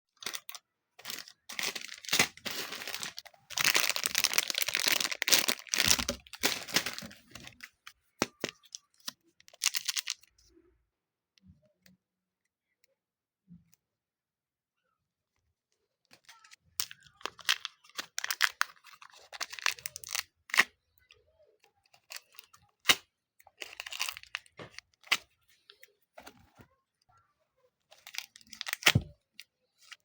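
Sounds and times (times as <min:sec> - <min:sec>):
clay crackling and crinkling: 0:00.1 - 0:10.4.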